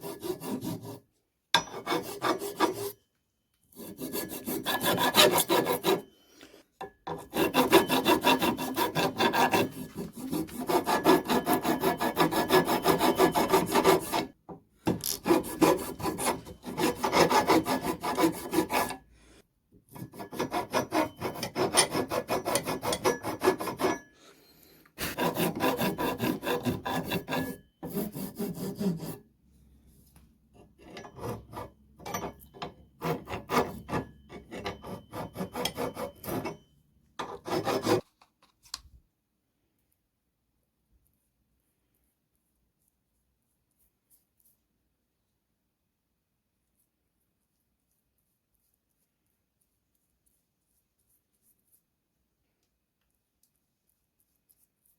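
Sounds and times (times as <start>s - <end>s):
metal tool scraping wood: 0.0s - 1.0s, 1.6s - 3.0s, 3.7s - 19.0s, 19.9s - 24.2s, 25.0s - 29.2s, 30.5s - 38.1s.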